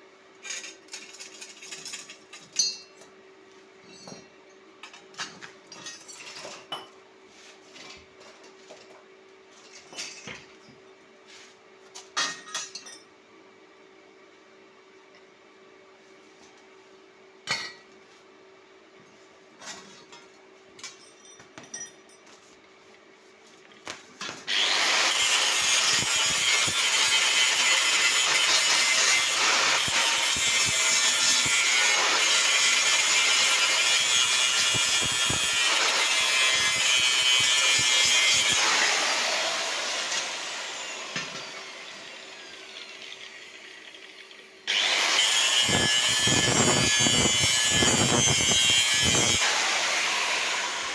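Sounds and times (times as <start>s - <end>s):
power tool grinding metal: 24.5s - 50.9s.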